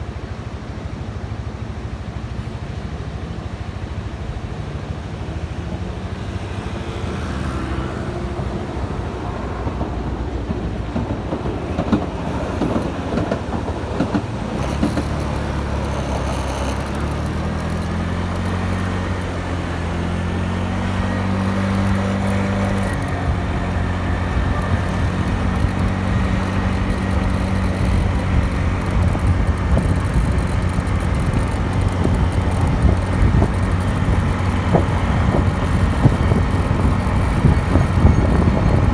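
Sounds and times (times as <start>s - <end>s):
scooter engine humming: 0.0s - 38.9s.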